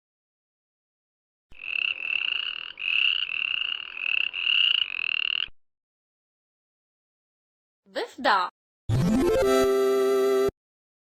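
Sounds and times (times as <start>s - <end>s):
frog trilled calls: 1.5s - 5.5s.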